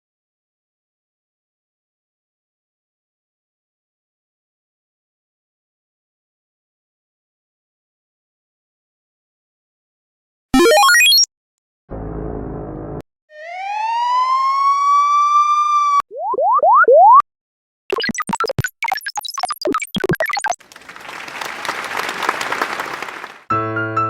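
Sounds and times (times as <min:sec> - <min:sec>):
piano music: 0:23.5 - 0:24.0.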